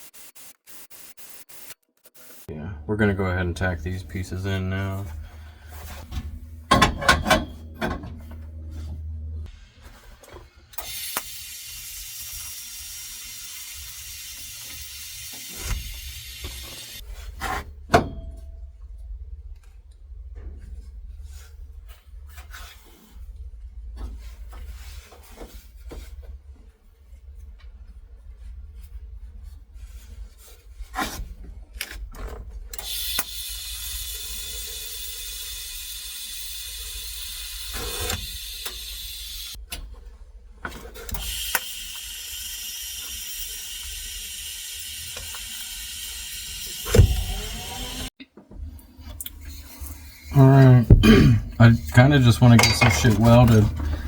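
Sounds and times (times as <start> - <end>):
welding arc hissing: 0.0 - 2.5, 10.8 - 17.0, 32.8 - 39.6, 41.2 - 48.1
sharp metal clank: 6.7 - 8.1, 52.5 - 53.6.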